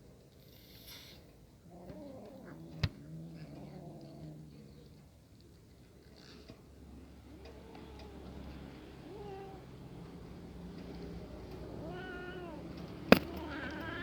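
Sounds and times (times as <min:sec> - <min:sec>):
cat meowing: 0:07.4 - 0:09.8, 0:11.5 - 0:14.0.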